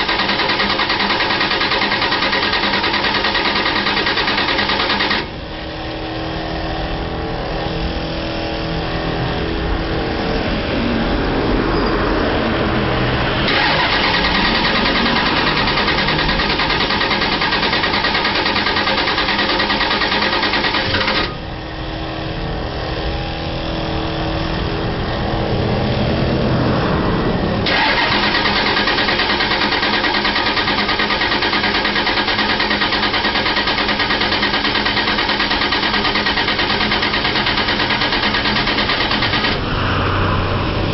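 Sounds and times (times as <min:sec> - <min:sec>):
engine cranking without starting: 0:00.0 - 0:05.4, 0:13.5 - 0:21.4, 0:27.7 - 0:39.6.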